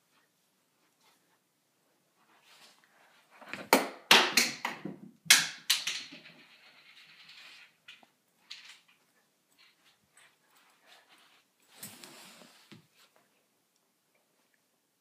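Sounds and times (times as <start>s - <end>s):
soft hiss: 7.3s - 15.0s.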